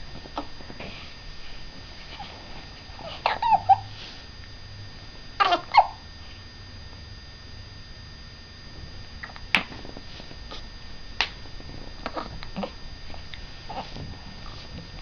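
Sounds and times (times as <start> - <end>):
person hiccuping: 3.2 - 3.9, 5.4 - 6.0.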